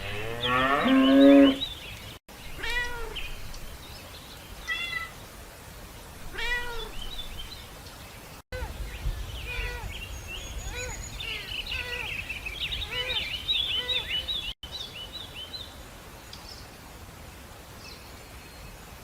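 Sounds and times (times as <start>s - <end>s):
cow mooing: 0.0s - 1.6s
cat meowing: 2.6s - 3.2s, 4.7s - 5.2s, 6.3s - 7.0s.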